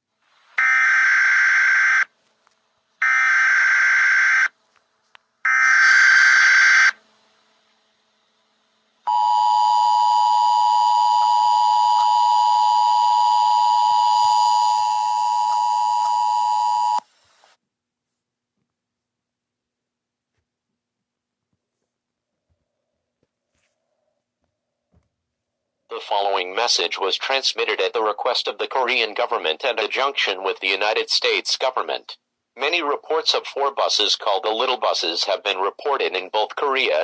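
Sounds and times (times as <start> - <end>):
two-tone attention signal: 9.1 - 17.0.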